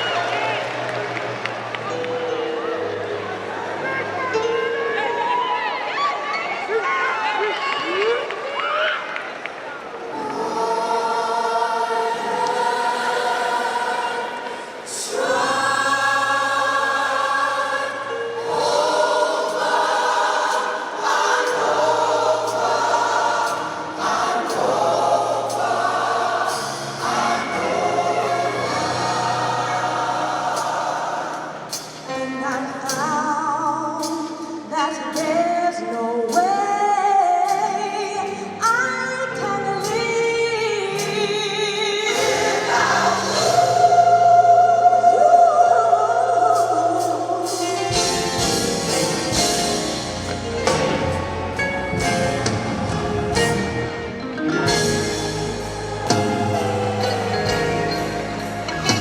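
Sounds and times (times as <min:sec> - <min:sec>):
gospel choir singing: 0:09.8 - 0:59.0
live band playing: 0:46.6 - 0:59.0.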